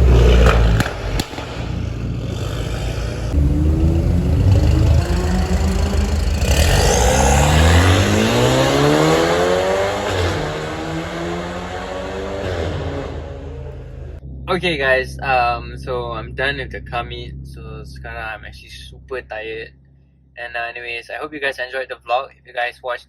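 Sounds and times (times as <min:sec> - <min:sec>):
sharp engine cracks: 0:00.0 - 0:03.4
car engine revving and accelerating: 0:00.0 - 0:14.2.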